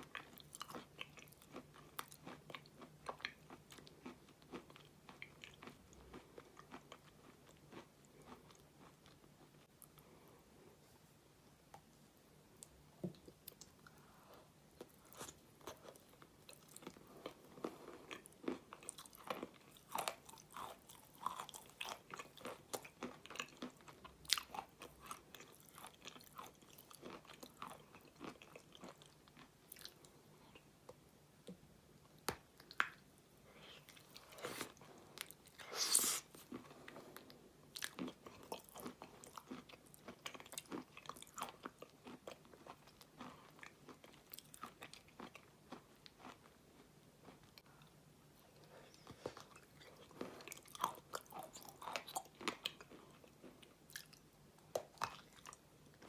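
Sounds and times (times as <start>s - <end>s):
crunchy eating sound: 0.0s - 10.0s, 14.8s - 30.7s, 33.6s - 56.0s
wet mouth eating sounds: 33.6s - 36.6s.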